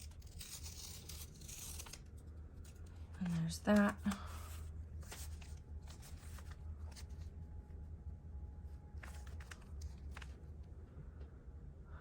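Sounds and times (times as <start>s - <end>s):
paper rustling: 0.0s - 7.4s, 9.0s - 10.5s
low steady hum: 0.0s - 12.0s.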